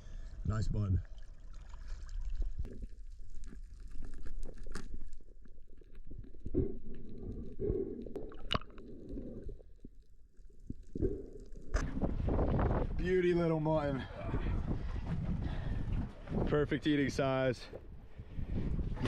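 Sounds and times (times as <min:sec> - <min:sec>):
underwater rumbling and gurgling: 0:02.0 - 0:13.0.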